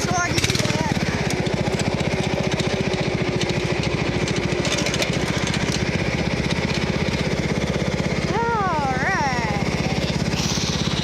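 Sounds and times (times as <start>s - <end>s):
sharp clicks and rattles: 0.0s - 7.5s
lawn mower engine running: 0.0s - 11.0s.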